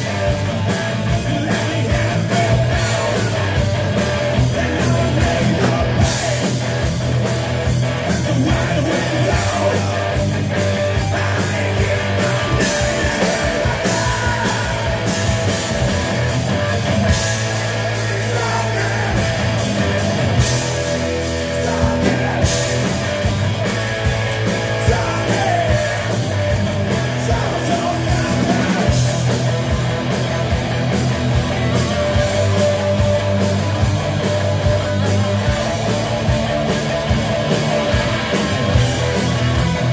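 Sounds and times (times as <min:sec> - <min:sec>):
live rock band playing: 0:00.0 - 0:39.9
person singing: 0:08.1 - 0:10.3, 0:10.9 - 0:15.6, 0:21.4 - 0:22.9, 0:24.7 - 0:26.3.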